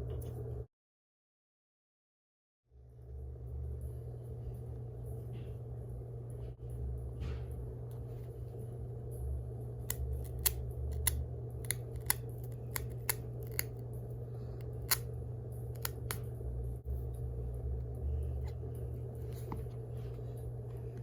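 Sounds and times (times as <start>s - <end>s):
low hum: 2.7s - 21.0s
scissors snipping packaging: 9.9s - 13.8s, 15.7s - 16.2s.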